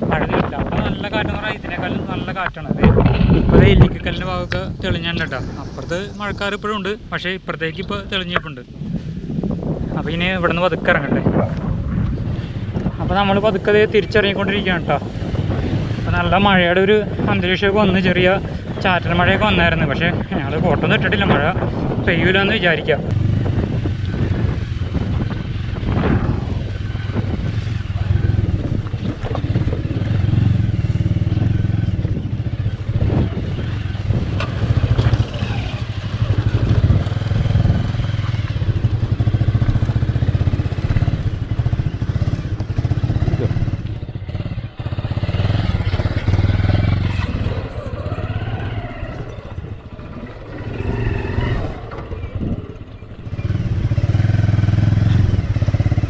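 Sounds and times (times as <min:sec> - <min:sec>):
motorcycle engine at low revs: 0:23.2 - 0:56.0
motorcycle knocks and rattles: 0:43.2 - 0:48.2, 0:48.8 - 0:54.1.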